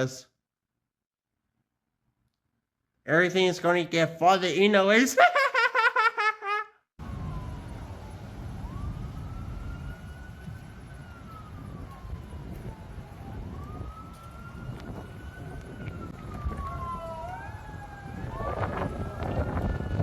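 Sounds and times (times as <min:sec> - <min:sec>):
emergency vehicle siren wailing: 0:07.0 - 0:20.0
second siren: 0:07.0 - 0:20.0.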